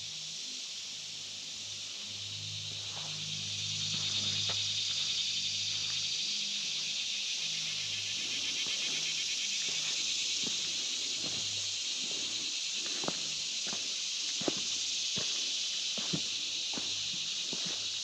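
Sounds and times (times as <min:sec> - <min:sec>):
high-pitched insect chorus: 0:00.0 - 0:18.0
crunching footsteps: 0:03.8 - 0:06.0, 0:08.1 - 0:18.0.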